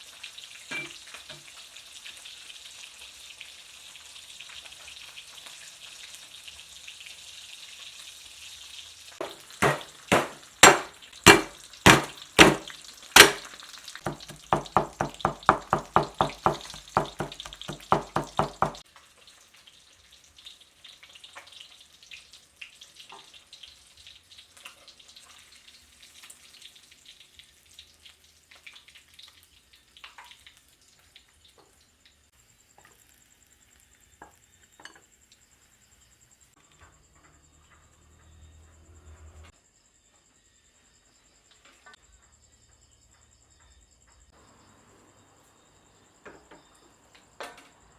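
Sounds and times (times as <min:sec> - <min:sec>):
fish sizzling in hot oil: 0:00.0 - 0:36.6
heavy knocks: 0:09.2 - 0:13.5, 0:14.1 - 0:18.8.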